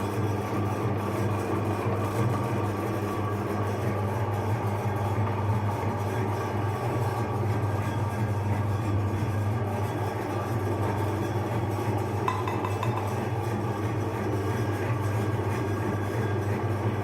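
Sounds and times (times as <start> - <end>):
electric meat grinder humming: 0.0 - 17.0.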